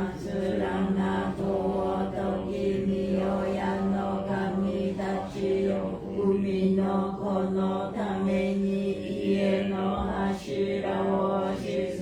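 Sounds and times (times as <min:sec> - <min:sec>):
congregation chanting prayer in unison: 0:00.0 - 0:12.0.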